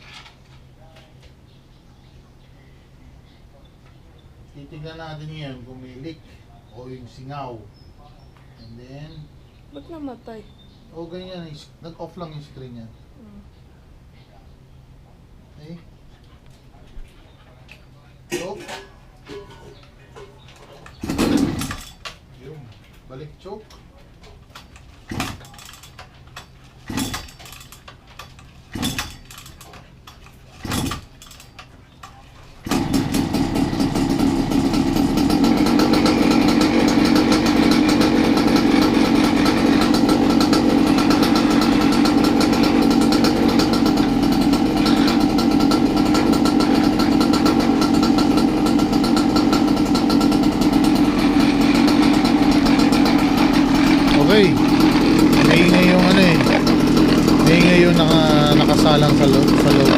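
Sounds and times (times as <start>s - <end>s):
two-stroke scooter engine: 20.9s - 22.0s, 24.4s - 31.7s, 32.5s - 59.9s.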